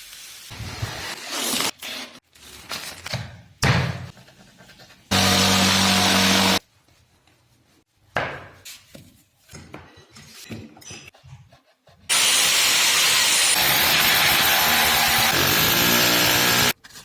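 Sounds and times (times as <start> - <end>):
power tool running: 5.1 - 6.6, 12.1 - 16.8
knocks and scrapes from hand work: 8.1 - 11.5.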